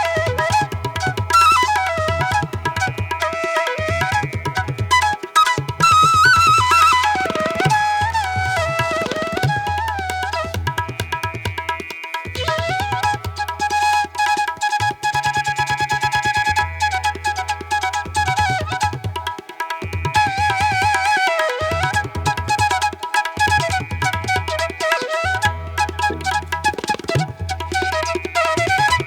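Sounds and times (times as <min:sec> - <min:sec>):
tabla strokes: 0:00.0 - 0:29.0.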